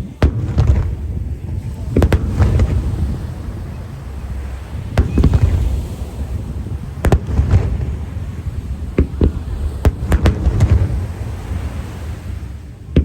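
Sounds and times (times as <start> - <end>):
continuous low rumble: 0.0 - 13.0
firework shells bursting: 0.0 - 13.0
rolling rumble and crackle: 0.0 - 13.0.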